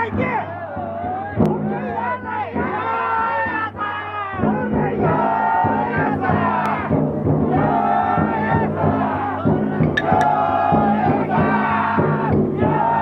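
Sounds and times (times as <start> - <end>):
people chanting and shouting: 0.0 - 13.0
taiko drum beating: 5.9 - 12.8.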